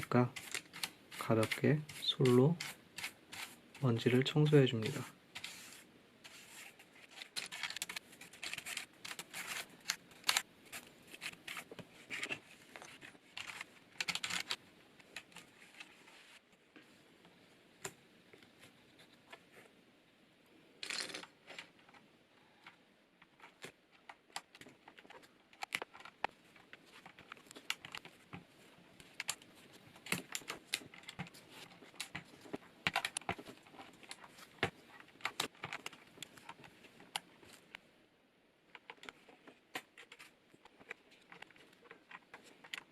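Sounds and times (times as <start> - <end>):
brush scrubbing keyboard: 0.0 - 14.5
small clicks and rattles: 12.2 - 16.0, 20.8 - 37.8.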